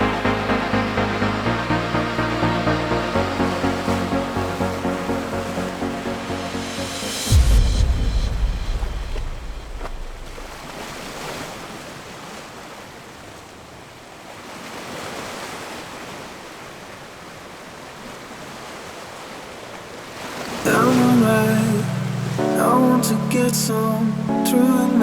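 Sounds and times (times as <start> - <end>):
ocean waves hissing: 0.0 - 11.6, 20.5 - 25.0.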